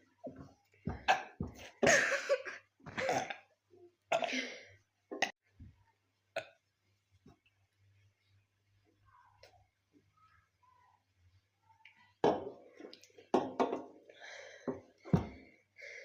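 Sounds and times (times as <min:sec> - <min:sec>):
burps: 0:00.9 - 0:02.0, 0:02.9 - 0:03.5, 0:06.4 - 0:06.6.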